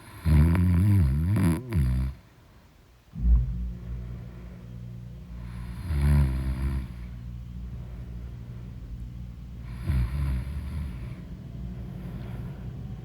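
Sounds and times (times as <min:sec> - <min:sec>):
person snoring: 0:00.0 - 0:02.2, 0:05.4 - 0:07.1, 0:09.6 - 0:11.2
steady low hum: 0:00.0 - 0:13.0.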